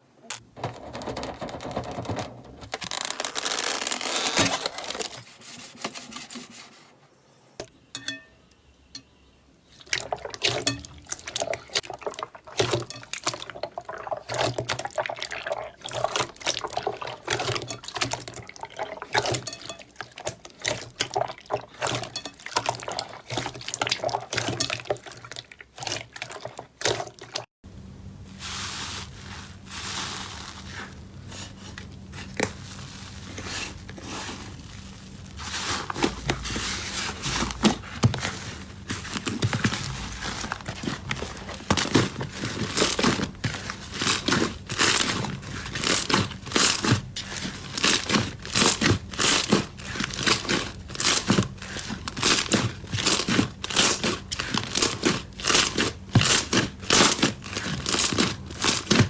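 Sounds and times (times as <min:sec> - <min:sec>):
slime crackling and squelching: 0:02.8 - 0:05.6, 0:28.4 - 0:59.0.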